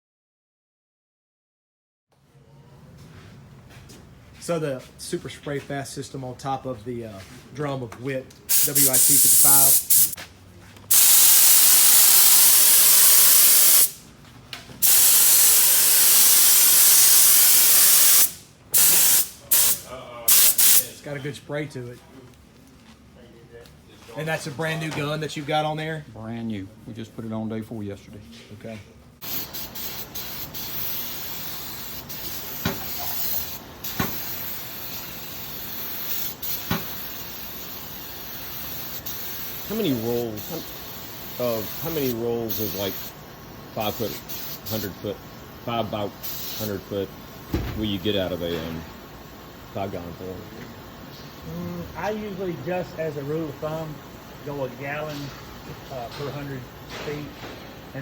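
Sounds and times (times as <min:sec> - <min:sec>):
spray gun hissing: 0:08.5 - 0:10.2, 0:10.9 - 0:14.0, 0:14.8 - 0:21.0, 0:29.2 - 0:51.3
low thumps: 0:47.4 - 0:48.1.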